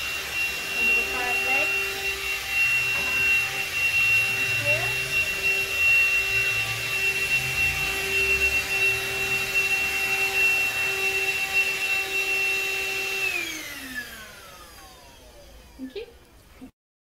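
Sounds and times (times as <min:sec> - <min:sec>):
cordless vacuum cleaner whine: 0:00.0 - 0:16.2
vacuum motor winding down: 0:00.0 - 0:16.2.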